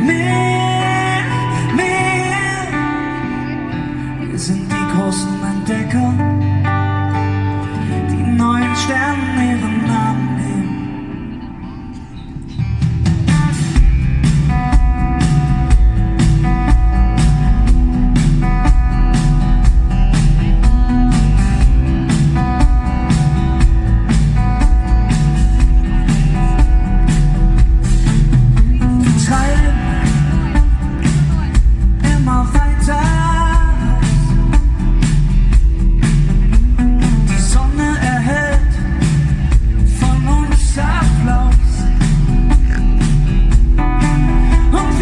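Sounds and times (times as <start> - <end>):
live pop band playing: 0.0 - 45.0
steady drum beat: 12.3 - 45.0.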